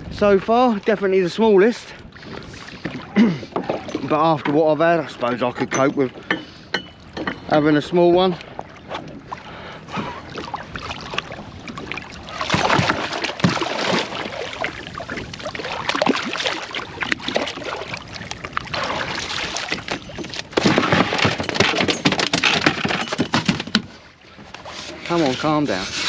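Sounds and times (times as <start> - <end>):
fish thrashing in a boat: 8.4 - 25.8.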